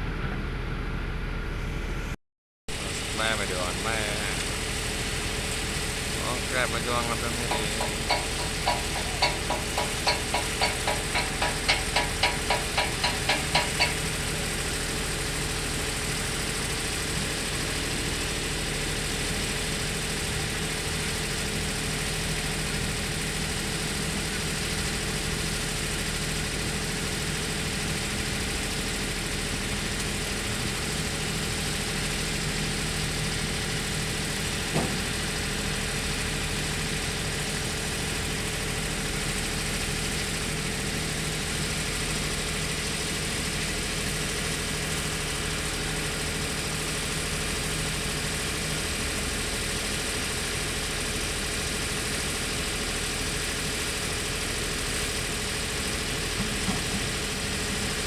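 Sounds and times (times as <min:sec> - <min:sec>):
diesel engine running: 0:00.0 - 0:58.0
knock: 0:07.5 - 0:14.0, 0:34.8 - 0:35.0.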